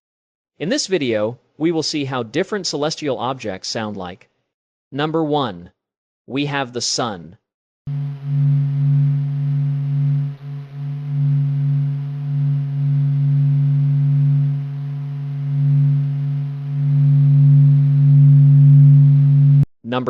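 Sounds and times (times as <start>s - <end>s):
low electronic hum: 7.9s - 19.7s.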